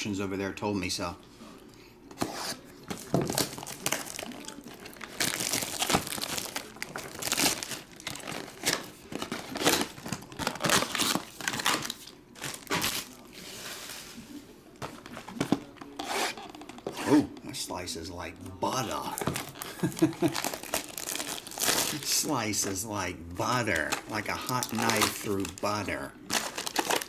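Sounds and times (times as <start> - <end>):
plastic wrap crackling and tearing: 2.8 - 14.0, 18.7 - 27.0.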